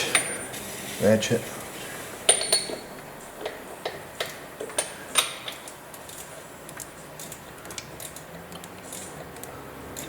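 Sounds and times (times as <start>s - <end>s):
ratchet wrench clicking: 4.2s - 10.0s.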